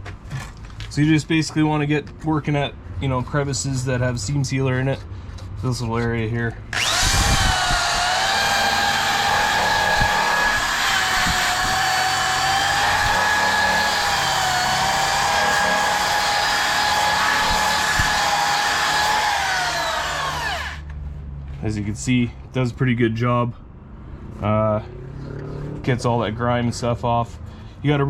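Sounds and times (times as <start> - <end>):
power drill motor whine: 6.7 - 20.9.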